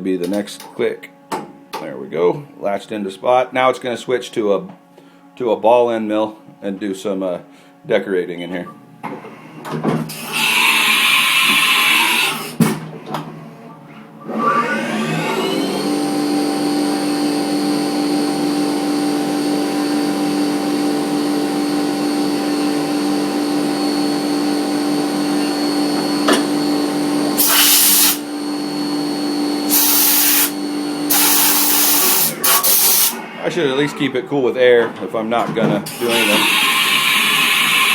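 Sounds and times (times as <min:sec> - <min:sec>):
mill spindle whining: 0:10.1 - 0:12.6, 0:14.2 - 0:34.1, 0:35.8 - 0:37.9
compressed air hisses: 0:27.4 - 0:28.2, 0:29.7 - 0:33.2, 0:35.9 - 0:37.9.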